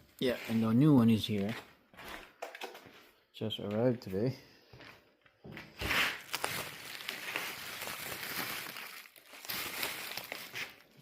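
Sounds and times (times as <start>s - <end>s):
packaging crinkling and rustling: 5.8s - 11.0s.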